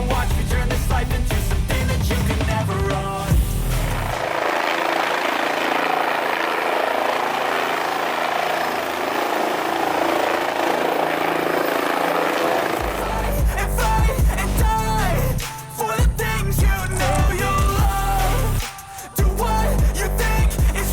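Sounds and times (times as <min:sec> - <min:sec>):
aircraft engine hum: 0:02.1 - 0:15.5.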